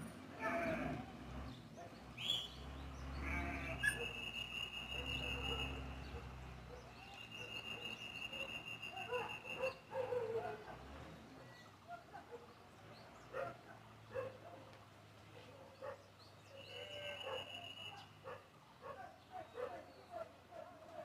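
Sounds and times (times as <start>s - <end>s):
sheep and goats bleating: 0.3s - 1.1s, 3.1s - 3.9s, 16.6s - 17.4s.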